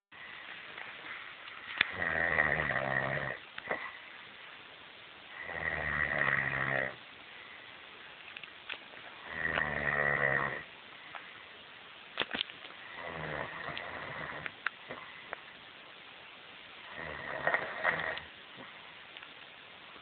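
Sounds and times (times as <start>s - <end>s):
rattling snores: 1.8s - 3.9s, 5.4s - 7.0s, 9.2s - 10.7s, 12.9s - 15.0s, 16.9s - 18.3s.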